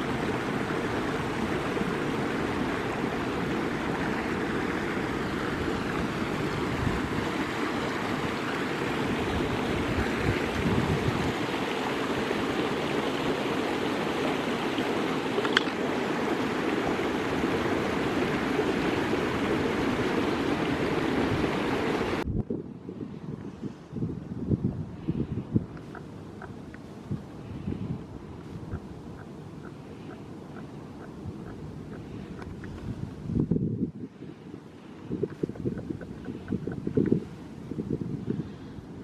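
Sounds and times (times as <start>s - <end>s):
creek water flowing: 0.0s - 22.2s, 25.8s - 33.3s, 34.2s - 39.0s.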